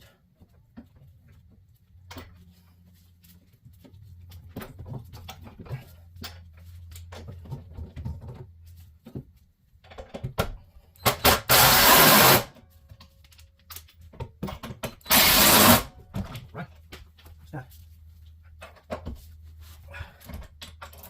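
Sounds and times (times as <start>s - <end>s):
metal parts clicking and clinking: 10.9s - 16.9s, 20.2s - 21.0s
power tool bursts: 11.1s - 12.5s, 15.0s - 15.9s.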